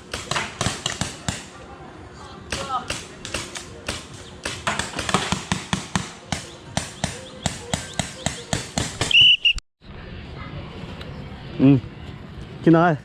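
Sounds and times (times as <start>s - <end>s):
paintball markers firing: 0.0s - 1.6s, 2.5s - 9.2s
referee's whistle blasts: 9.1s - 9.6s.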